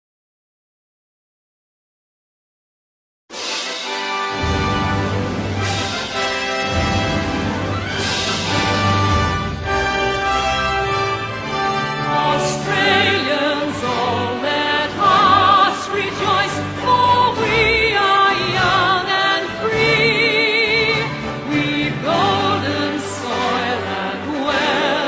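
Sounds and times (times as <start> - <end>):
instrumental accompaniment: 3.3 - 25.0
person singing with vibrato: 11.9 - 25.0.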